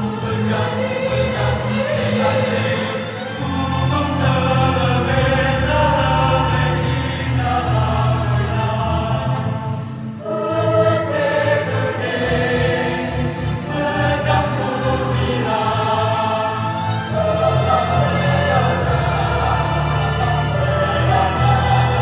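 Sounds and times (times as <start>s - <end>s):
choir singing in harmony: 0.0s - 22.0s.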